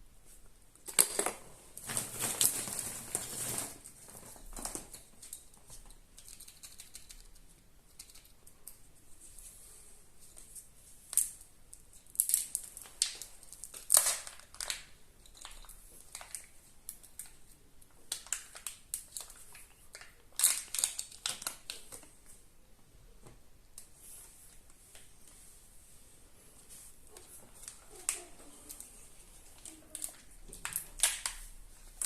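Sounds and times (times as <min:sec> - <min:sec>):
foil wrapper crinkling: 0:00.8 - 0:05.4, 0:12.1 - 0:16.5, 0:18.1 - 0:22.0.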